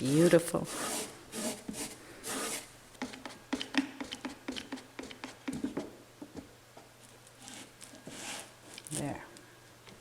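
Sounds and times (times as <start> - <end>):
rubbing strokes on wood: 0.0 - 3.2.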